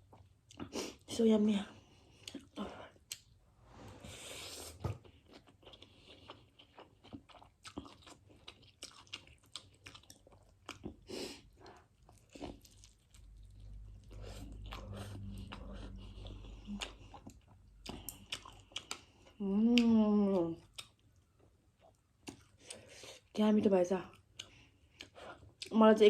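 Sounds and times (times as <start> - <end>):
person chewing noodles: 0.0 - 1.0, 1.8 - 3.4, 4.2 - 23.4, 24.1 - 25.8
steady low hum: 11.5 - 19.7.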